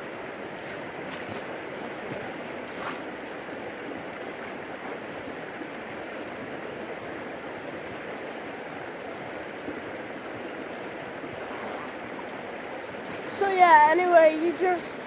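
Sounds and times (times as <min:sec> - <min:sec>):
creek water rushing over rocks: 0:00.0 - 0:15.0.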